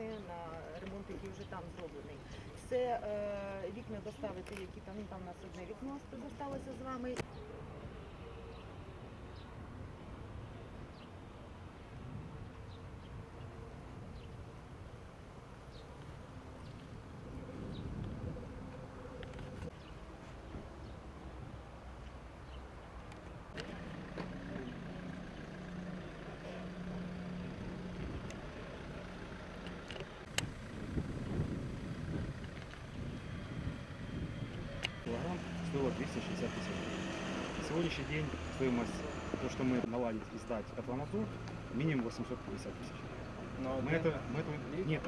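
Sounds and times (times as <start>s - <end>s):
engine idling: 23.6s - 32.6s
low steady rumble: 23.7s - 35.1s.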